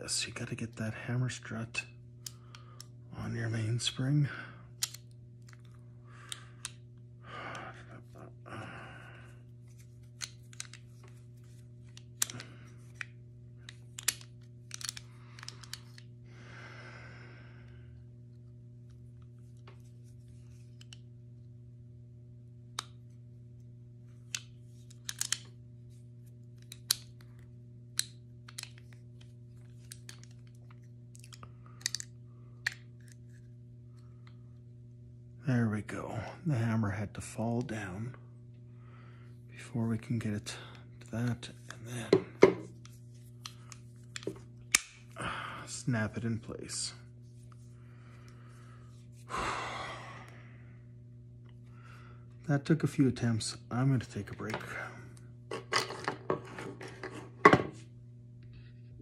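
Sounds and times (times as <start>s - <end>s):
steady low hum: 0.0s - 59.0s
metal parts clicking and tapping: 13.9s - 16.0s, 24.3s - 25.5s, 31.2s - 32.8s.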